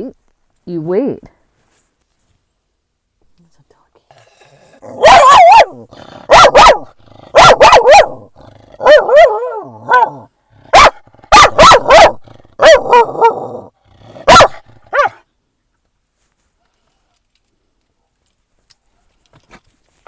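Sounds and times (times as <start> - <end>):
dog barking loudly: 4.8 - 15.2.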